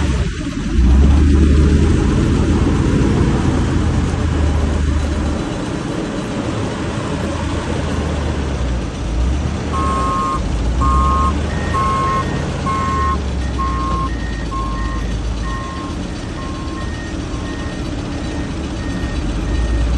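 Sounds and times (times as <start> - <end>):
heavy machinery engine running: 0.0 - 19.9
higher-pitched reversing alarm: 9.7 - 19.9
reversing alarm beeping: 9.7 - 19.9.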